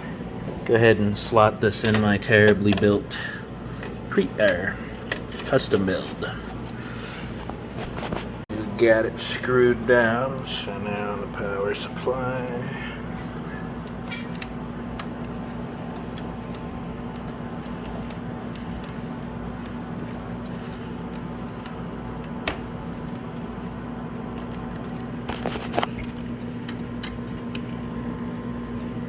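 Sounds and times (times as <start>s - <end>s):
steady background hum: 0.0s - 29.0s
cable clicks and handling: 1.7s - 3.0s, 13.2s - 29.0s.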